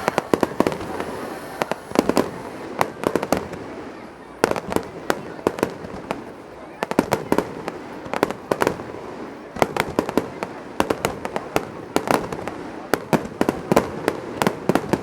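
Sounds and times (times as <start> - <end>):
rumble of echoing explosions: 0.0 - 3.7
firework shells bursting: 0.0 - 3.9.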